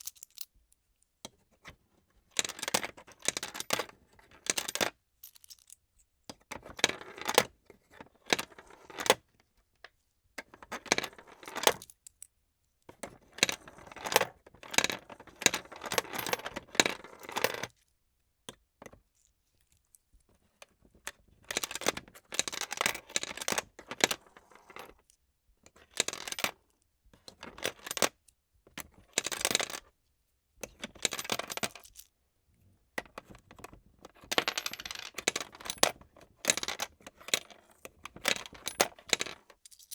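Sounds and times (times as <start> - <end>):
coins clattering in plastic sorter: 34.3 - 35.9, 38.2 - 39.9.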